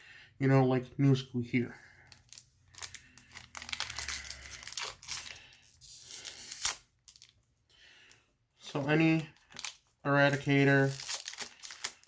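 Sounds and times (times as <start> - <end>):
foil wrapper tearing and crinkling: 2.1 - 7.3, 9.4 - 12.0.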